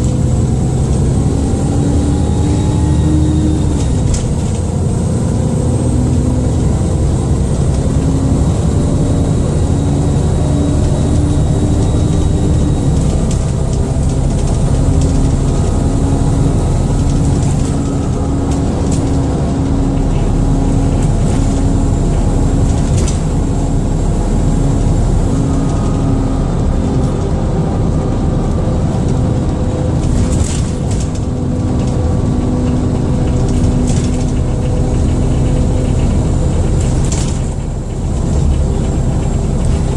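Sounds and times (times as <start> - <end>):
high-pitched turbo whine: 0.0 - 28.9
bus engine drone: 0.0 - 39.9
light rattles and clicks: 3.8 - 5.0, 11.8 - 26.0, 28.4 - 39.9.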